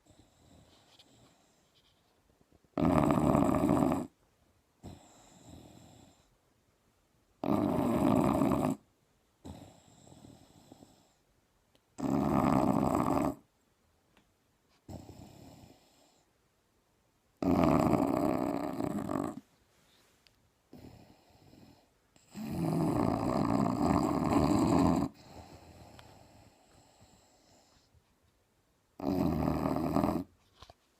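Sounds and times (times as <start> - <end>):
dog snoring loudly: 2.8 - 4.2, 4.8 - 6.3, 7.4 - 11.2, 12.0 - 13.5, 14.9 - 16.2, 17.4 - 19.4, 20.7 - 27.7, 29.0 - 30.3.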